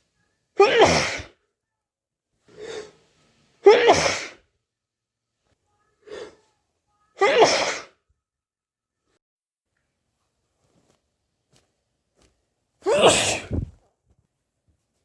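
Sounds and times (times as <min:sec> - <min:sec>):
person sneezing: 0:00.6 - 0:01.4, 0:03.6 - 0:04.4, 0:07.2 - 0:08.0, 0:12.8 - 0:13.8.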